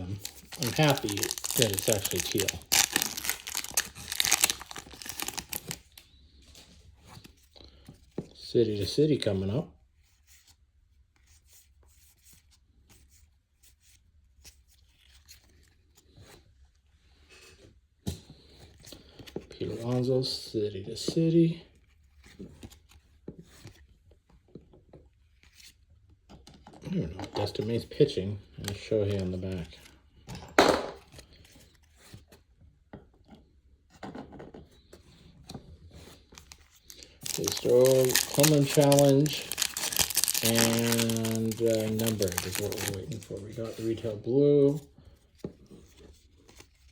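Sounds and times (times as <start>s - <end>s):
trading cards rustling: 0.0s - 6.0s, 36.0s - 44.8s.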